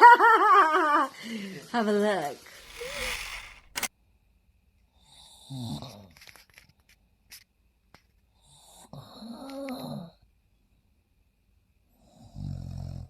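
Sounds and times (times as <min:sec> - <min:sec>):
sharp click: 0:02.6 - 0:03.9.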